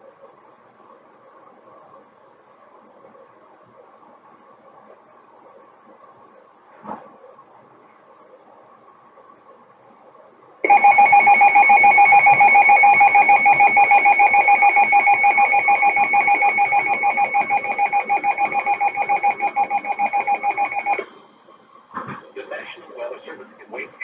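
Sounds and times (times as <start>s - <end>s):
loud steady electronic alert tone: 10.6s - 21.4s.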